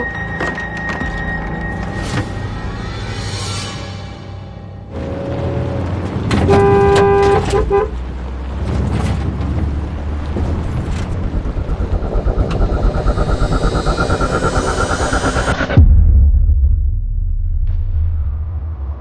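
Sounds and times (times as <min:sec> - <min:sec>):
engine rumbling: 0:00.0 - 0:17.2
vehicle horn blasts: 0:06.4 - 0:08.0.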